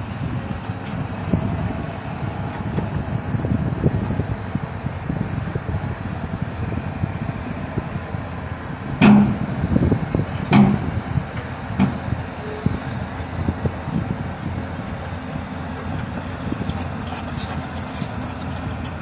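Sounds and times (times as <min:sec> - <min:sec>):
diesel machinery rumbling: 0:00.0 - 0:19.0
loud metallic bangs: 0:09.0 - 0:09.6.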